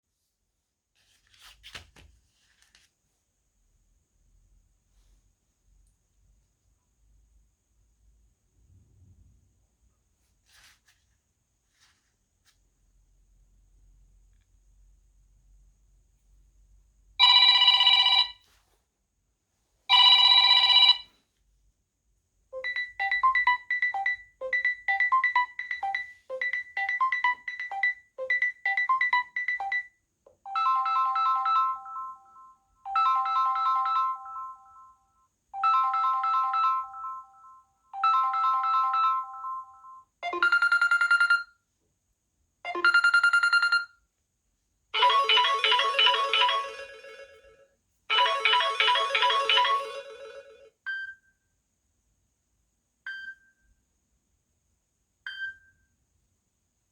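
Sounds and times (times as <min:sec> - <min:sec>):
phone ringtone: 0:17.2 - 0:18.4, 0:19.9 - 0:21.1, 0:22.6 - 0:29.9, 0:30.5 - 0:35.0, 0:35.6 - 0:41.5, 0:42.7 - 0:43.9, 0:45.0 - 0:50.8.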